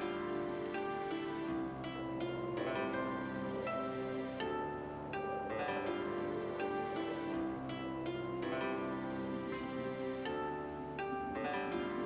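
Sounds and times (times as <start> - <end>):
gentle plucked strings music: 0.0 - 12.0.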